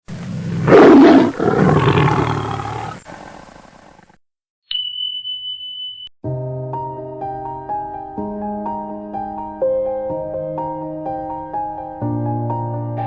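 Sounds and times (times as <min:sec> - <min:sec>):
loud roar: 0:00.2 - 0:03.6.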